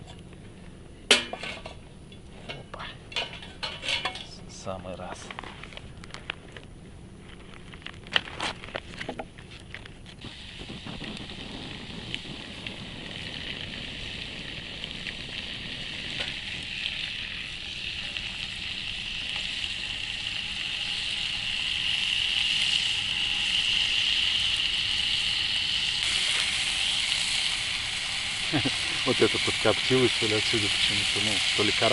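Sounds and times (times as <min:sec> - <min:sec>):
sausages sizzling in a pan: 0:10.2 - 0:31.9.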